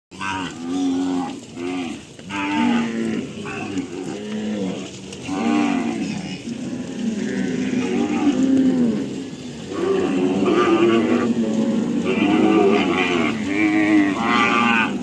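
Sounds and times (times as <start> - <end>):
cattle mooing: 0.2 - 15.0.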